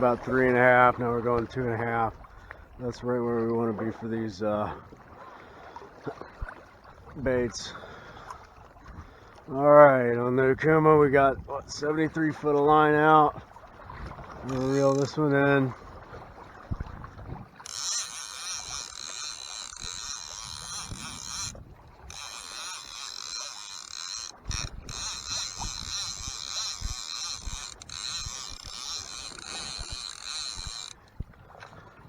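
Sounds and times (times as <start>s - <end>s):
fishing reel whirring: 14.5s - 15.2s, 17.6s - 31.0s.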